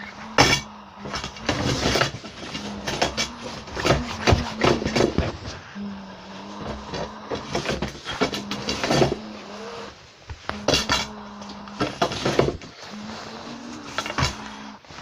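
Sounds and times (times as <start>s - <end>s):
knocks and rattles: 0.0s - 5.6s, 6.4s - 9.5s, 10.2s - 12.8s
vacuum cleaner motor hum: 0.0s - 15.0s.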